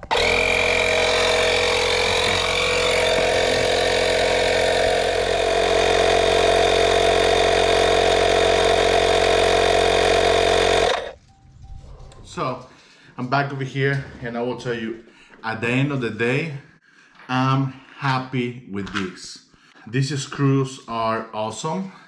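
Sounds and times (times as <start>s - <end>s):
tyre inflator compressor running: 0.0s - 11.2s.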